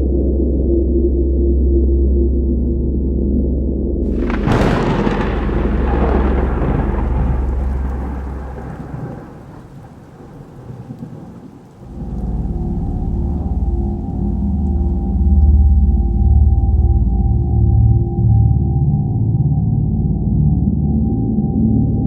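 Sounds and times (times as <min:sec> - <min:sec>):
sharp thunderclap: 0:04.1 - 0:14.9
rolling thunder: 0:04.1 - 0:18.6
low droning tone: 0:12.0 - 0:22.0.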